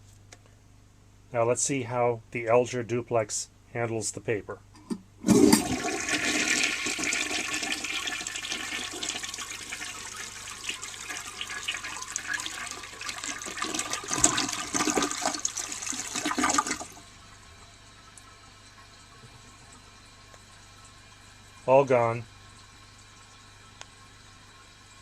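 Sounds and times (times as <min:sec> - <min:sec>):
toilet flushing: 0:05.2 - 0:25.0.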